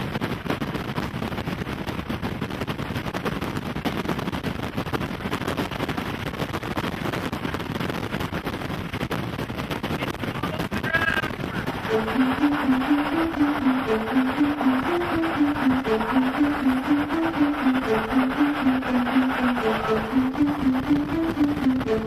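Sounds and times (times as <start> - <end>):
storm wind on microphone: 0.0 - 22.0.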